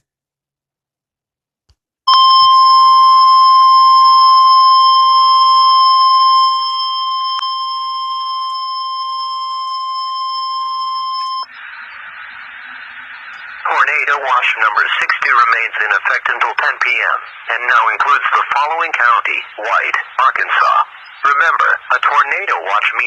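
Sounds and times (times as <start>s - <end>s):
high piercing alarm tone: 2.1s - 12.4s
faint radio hiss: 11.2s - 23.0s.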